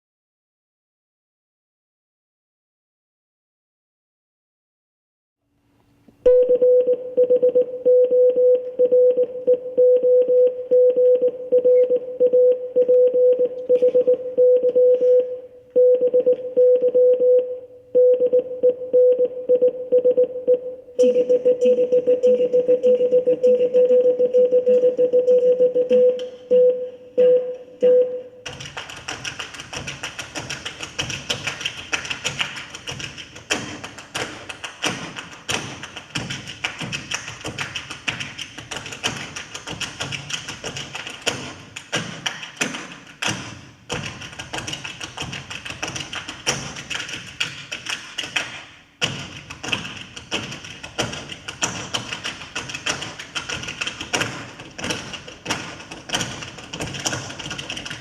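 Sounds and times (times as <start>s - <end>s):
feet tapping and stamping: 28.5s - 58.0s.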